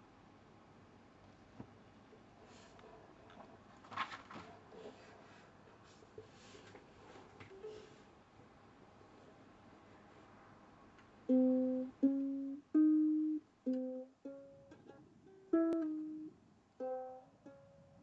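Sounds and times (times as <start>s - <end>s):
ukulele chords strummed: 11.2s - 18.0s.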